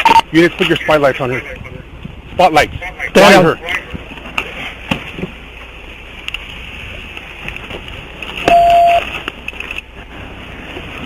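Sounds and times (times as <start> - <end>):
low vehicle background noise: 0.0 - 11.0
loud electronic beep: 8.5 - 9.0.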